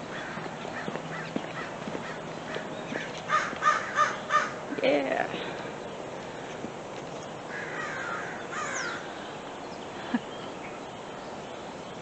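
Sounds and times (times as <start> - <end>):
crows cawing: 0.0 - 4.6, 7.5 - 9.2.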